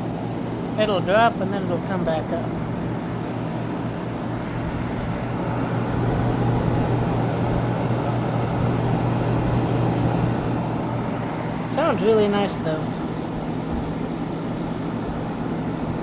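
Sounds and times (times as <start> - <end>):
air conditioner compressor hum: 0.0 - 16.0
air conditioner fan rushing: 0.0 - 16.0
person talking: 0.8 - 2.6, 11.7 - 13.0.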